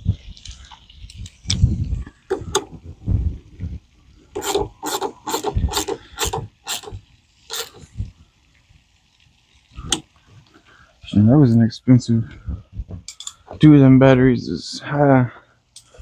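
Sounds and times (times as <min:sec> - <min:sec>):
low knocks and thumps: 0:01.5 - 0:04.0, 0:12.2 - 0:14.4
hand tool rasping strokes: 0:04.4 - 0:08.0.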